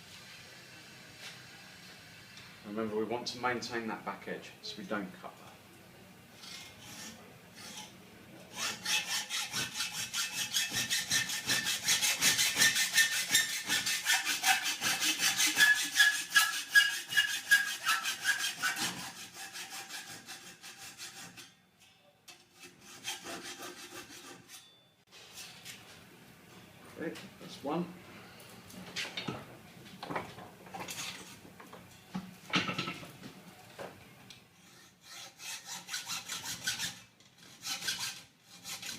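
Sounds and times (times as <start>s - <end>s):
hacksaw cutting steel: 6.4s - 21.6s, 22.3s - 24.7s, 34.7s - 38.9s.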